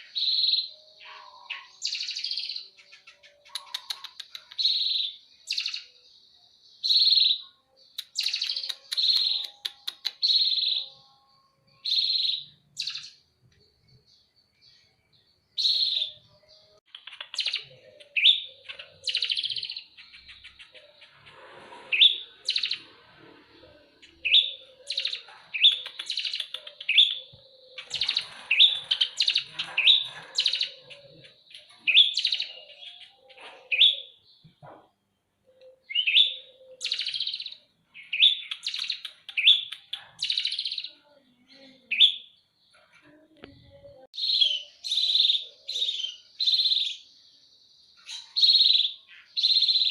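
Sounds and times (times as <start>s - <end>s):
sparrows chirping: 0.0s - 49.9s.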